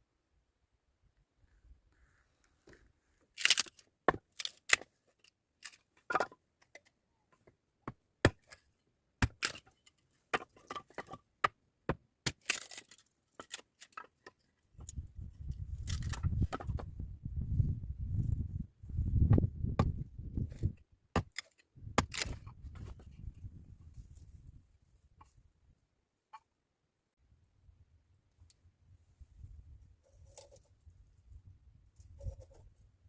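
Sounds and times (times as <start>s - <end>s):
sharp irregular cracks and knocks: 8.2s - 14.3s, 21.1s - 22.5s.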